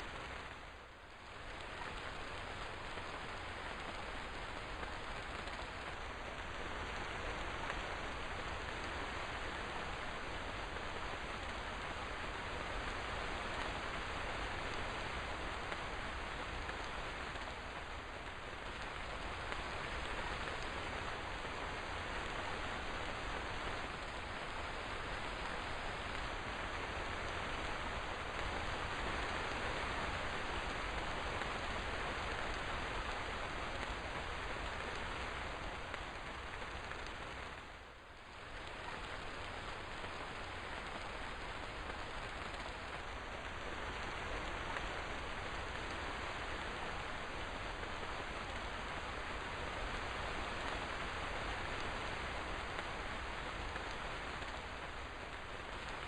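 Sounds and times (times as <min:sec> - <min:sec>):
steady rain falling: 0:00.0 - 0:56.0.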